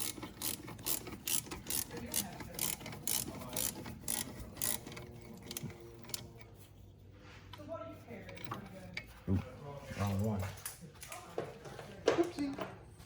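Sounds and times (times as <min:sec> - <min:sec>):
ratchet wrench clicking: 0:00.0 - 0:06.3.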